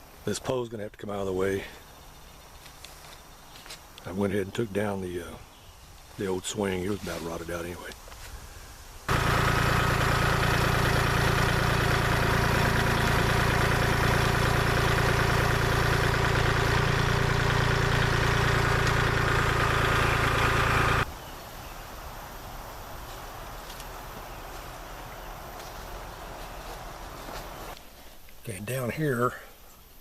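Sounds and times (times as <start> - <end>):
diesel engine running: 9.1 - 21.1, 24.1 - 27.8.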